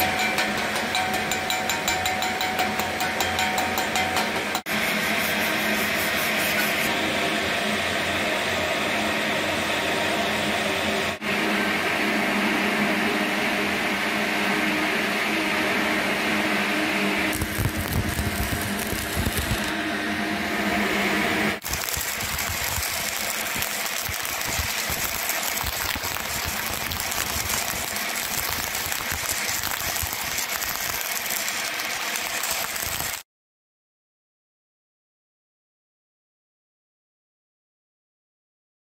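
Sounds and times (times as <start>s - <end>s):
welding arc crackling and buzzing: 17.2s - 19.9s, 21.5s - 33.2s.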